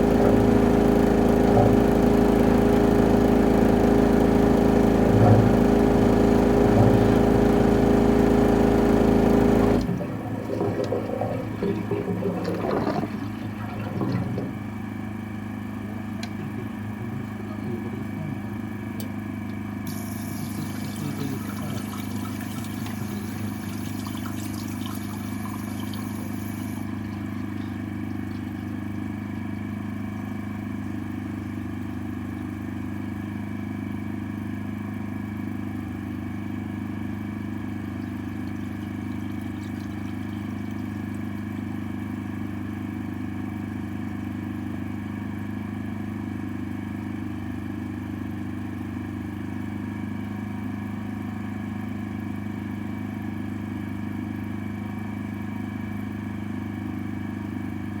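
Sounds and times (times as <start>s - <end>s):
drain-jetting machine engine running: 0.0s - 33.3s, 35.2s - 43.6s.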